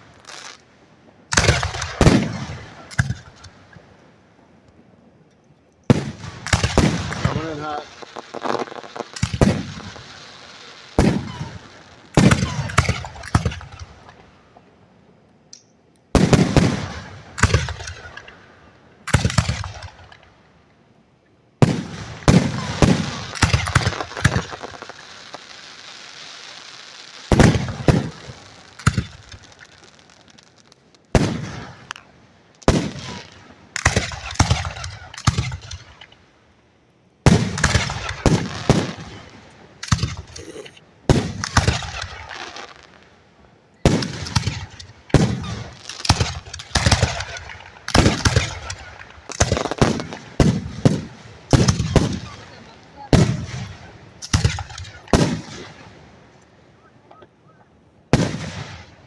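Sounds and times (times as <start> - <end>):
firework crackle: 0.0 - 4.0, 5.8 - 14.6, 21.6 - 36.4, 37.2 - 43.2, 43.8 - 56.6
firework booms: 1.2 - 3.9, 5.9 - 14.6, 16.1 - 18.2, 21.6 - 36.1, 37.2 - 43.0, 43.8 - 56.2, 58.1 - 59.0.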